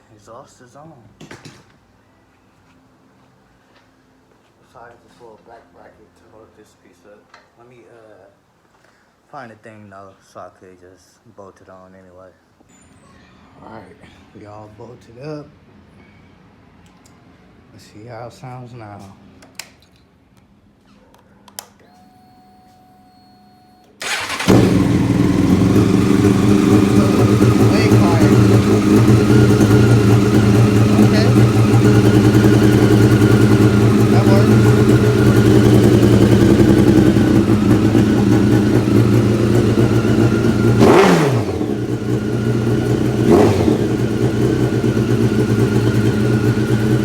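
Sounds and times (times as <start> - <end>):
starter click and whine: 23.8 - 30.8
motorcycle engine cranking: 24.0 - 47.0
motorcycle engine running: 24.0 - 47.0.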